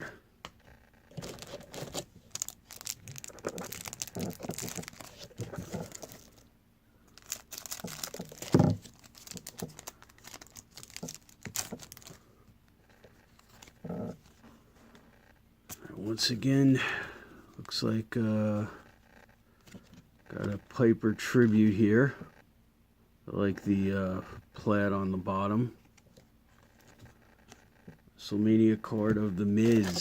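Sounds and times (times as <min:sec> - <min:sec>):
wrapper crinkling and rustling: 0:01.1 - 0:06.4, 0:07.1 - 0:12.2, 0:13.2 - 0:14.4, 0:29.5 - 0:30.0.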